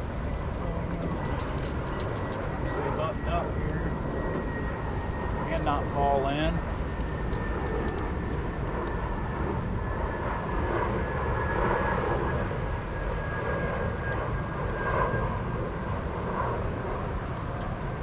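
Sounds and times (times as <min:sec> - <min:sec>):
thin steady whine: 0:00.0 - 0:12.3
wind: 0:00.0 - 0:18.0.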